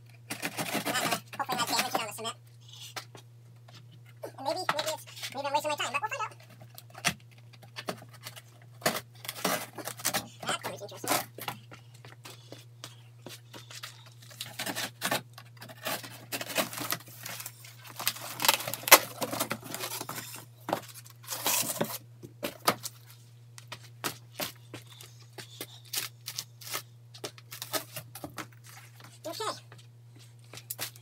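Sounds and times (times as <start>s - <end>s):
cardboard scraping and tearing: 0.3s - 1.3s, 14.3s - 22.0s.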